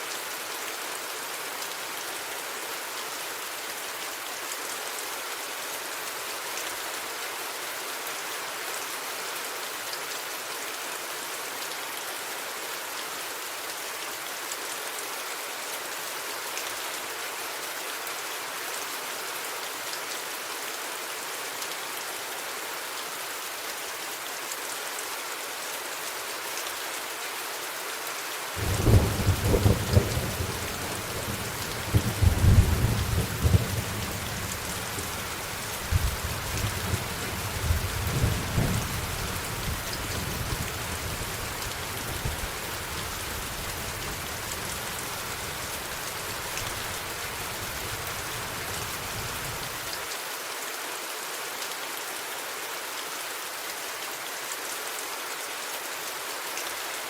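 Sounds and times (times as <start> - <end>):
steady rainfall: 0.0 - 57.0
thunder rumbling: 28.6 - 40.8.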